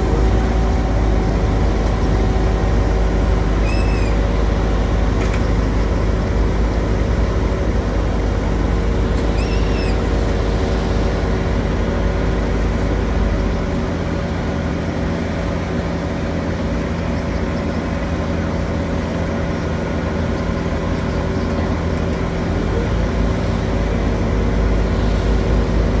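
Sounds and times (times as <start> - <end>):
large engine rumbling: 0.0 - 26.0.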